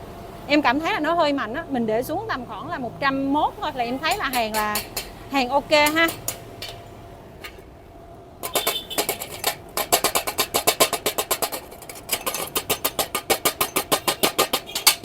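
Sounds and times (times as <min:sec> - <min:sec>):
hammer striking steel: 0:04.0 - 0:07.6, 0:08.4 - 0:15.0.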